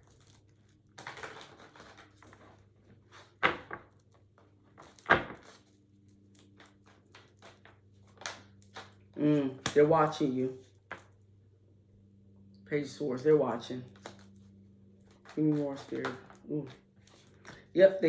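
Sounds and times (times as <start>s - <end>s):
cards shuffling: 15.0s - 18.0s.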